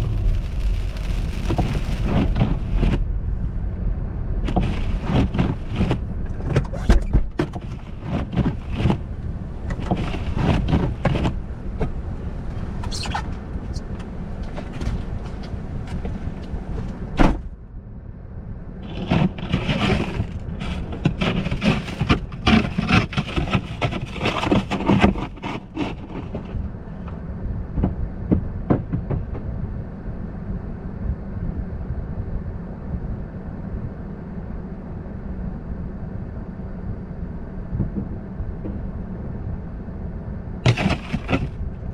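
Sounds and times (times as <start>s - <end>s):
tyres crunching on ice: 0.0s - 3.0s, 40.7s - 41.6s
car road rumble: 0.0s - 31.3s, 33.7s - 41.9s.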